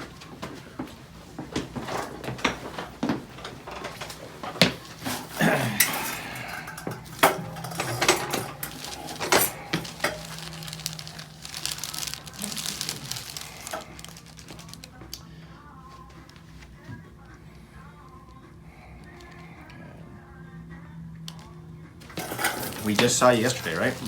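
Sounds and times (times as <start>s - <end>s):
shuffling noise: 0.0s - 15.0s, 22.1s - 24.0s
neck joints cracking: 0.0s - 15.3s.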